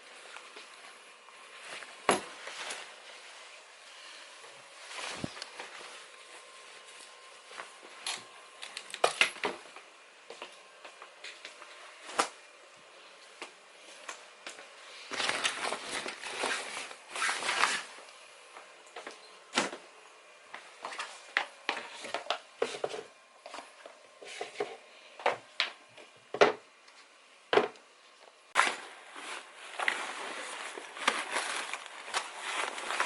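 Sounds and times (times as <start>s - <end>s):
rustling and scraping: 0.0s - 9.8s, 13.1s - 18.1s, 20.5s - 26.1s, 28.6s - 33.0s.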